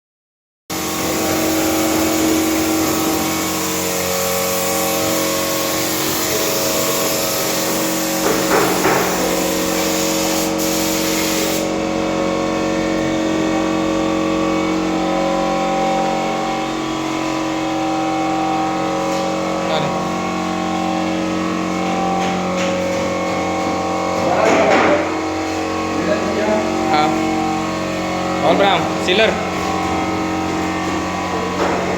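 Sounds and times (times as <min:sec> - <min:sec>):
compressor humming: 0:00.7 - 0:31.9
air spraying hiss: 0:00.8 - 0:11.7.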